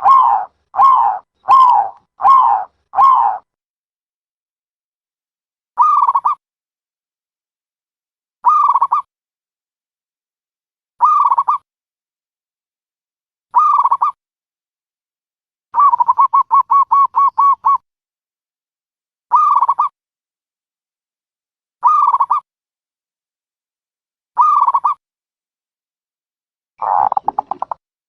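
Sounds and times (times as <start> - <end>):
dove cooing: 0.0 - 3.4, 26.8 - 27.8.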